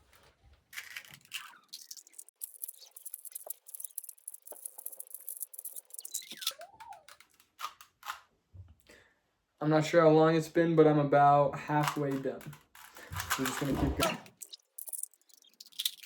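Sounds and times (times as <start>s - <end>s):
plastic puzzle cube clicking: 2.5s - 8.3s, 11.8s - 16.0s.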